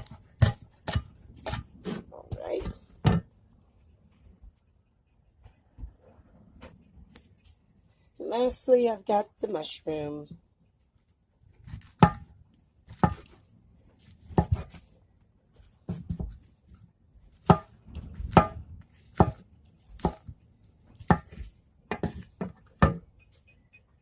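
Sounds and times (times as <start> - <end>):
knife chopping on cutting board: 0.0 - 3.2, 11.6 - 12.3, 12.9 - 13.4, 14.2 - 14.8, 17.4 - 20.4, 21.0 - 23.0.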